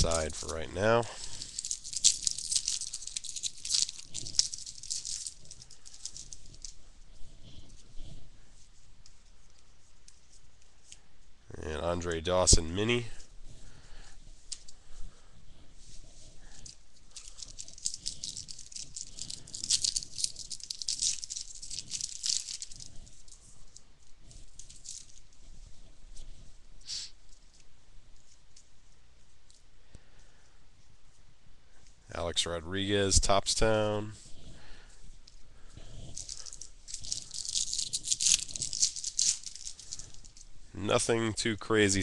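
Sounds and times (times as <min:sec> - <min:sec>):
card pack crinkling: 0:00.0 - 0:06.8, 0:16.5 - 0:25.3, 0:36.1 - 0:41.2
trading cards shuffled by hand: 0:36.2 - 0:41.1.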